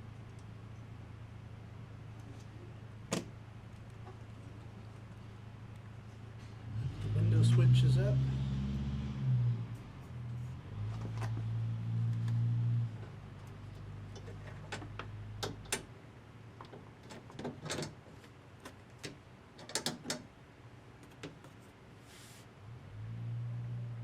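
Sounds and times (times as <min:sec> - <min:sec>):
plastic parts clicking and knocking: 0:18.6 - 0:20.2.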